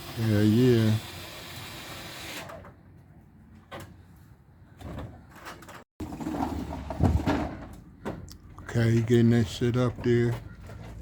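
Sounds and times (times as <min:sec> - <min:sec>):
panels knocking and scraping: 0:04.8 - 0:08.3.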